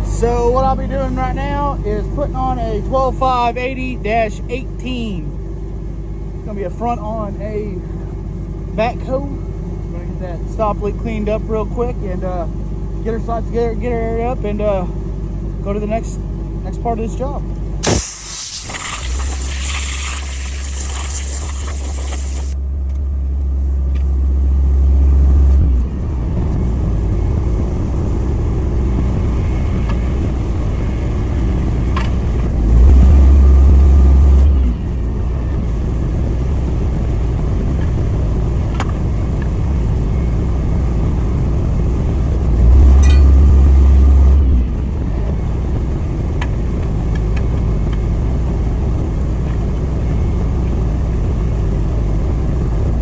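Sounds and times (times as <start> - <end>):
steady low hum: 0.0 - 53.0
tire changer motor running: 0.0 - 53.0
air hissing: 17.8 - 22.6.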